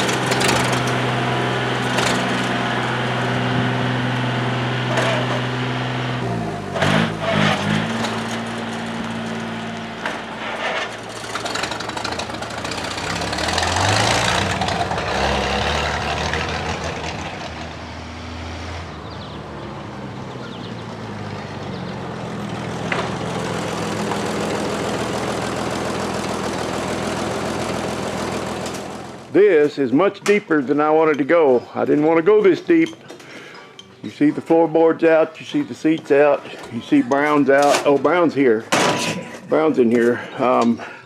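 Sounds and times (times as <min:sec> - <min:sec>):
vehicle engine idling and revving: 0:00.0 - 0:29.4.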